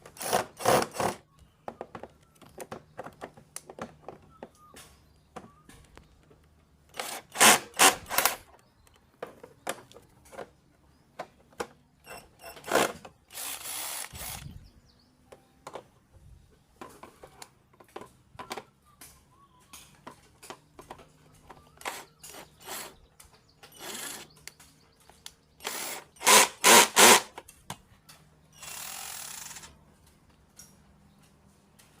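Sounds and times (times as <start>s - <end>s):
clicks and knocks of handling: 1.4s - 6.7s, 8.5s - 11.8s, 16.8s - 22.4s
cordless drill running: 12.5s - 14.6s, 23.8s - 24.3s, 25.6s - 27.3s, 28.6s - 29.7s.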